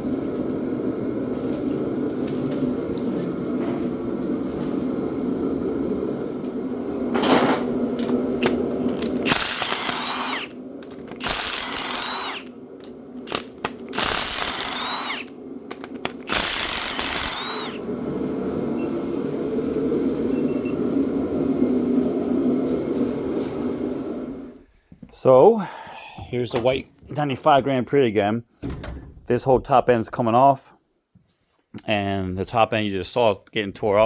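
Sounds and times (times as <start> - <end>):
power tool whining: 7.2 - 18.0.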